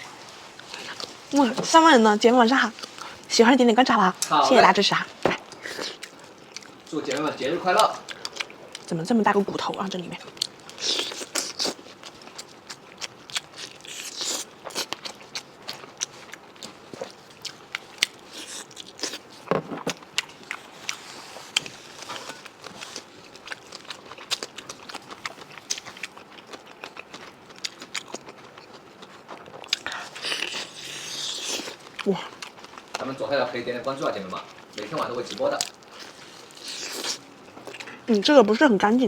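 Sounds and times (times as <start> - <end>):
chewing meat with bones: 5.5 - 33.2, 34.0 - 39.0.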